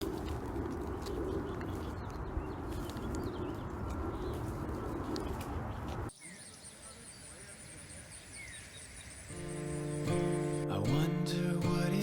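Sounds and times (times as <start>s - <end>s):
low bird calls: 0.9s - 10.7s.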